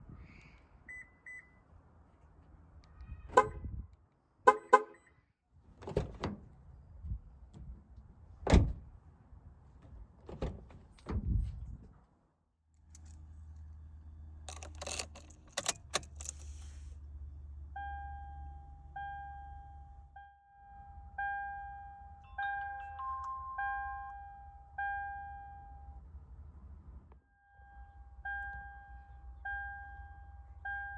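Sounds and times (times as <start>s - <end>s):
knocks and clunks: 5.8s - 6.5s, 8.5s - 8.9s, 9.8s - 11.5s
dashboard warning chime: 17.8s - 26.0s, 27.3s - 30.9s.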